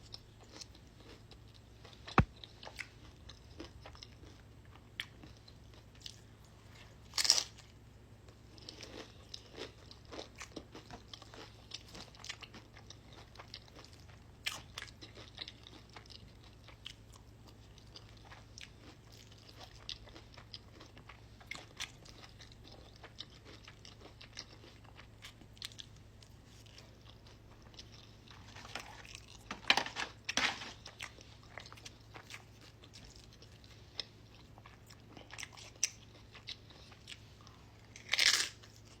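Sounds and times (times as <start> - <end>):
crunchy chewing: 0.0 - 39.0
loud crunchy bites: 37.9 - 38.7.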